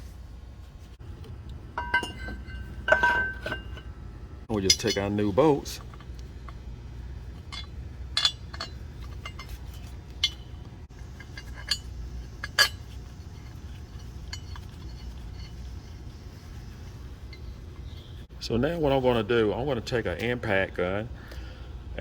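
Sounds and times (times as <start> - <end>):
steady low hum: 0.0 - 22.0
steel bolts clinking on metal: 1.8 - 3.9, 4.5 - 6.6, 7.3 - 16.0.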